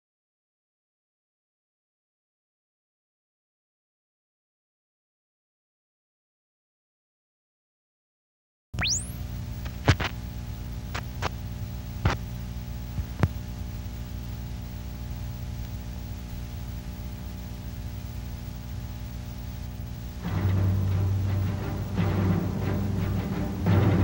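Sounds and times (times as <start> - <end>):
sharp clicks or pops: 8.8 - 10.2
electrical hum and buzz: 8.8 - 24.0.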